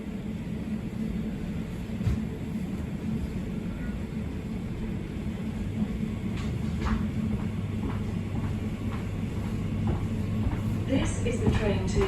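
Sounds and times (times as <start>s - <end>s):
train low rumble: 0.0s - 12.0s.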